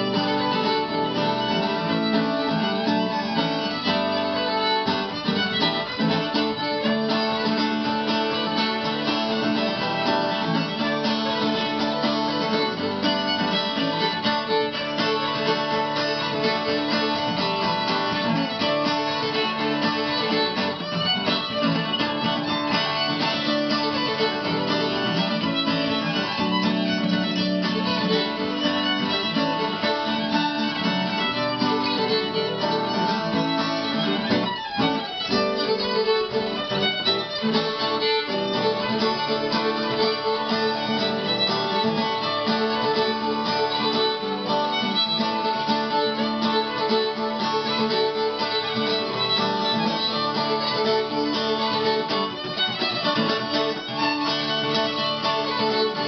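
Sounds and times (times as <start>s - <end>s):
fiddle playing reels: 0.0s - 56.0s
strummed acoustic guitar: 0.0s - 56.0s.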